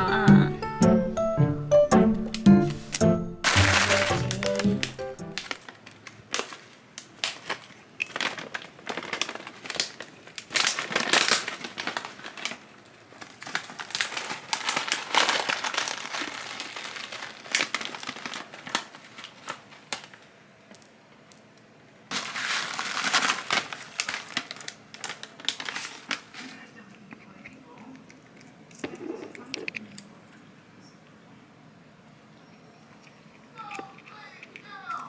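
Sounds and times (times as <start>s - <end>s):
crinkling and crackling: 2.3s - 30.4s.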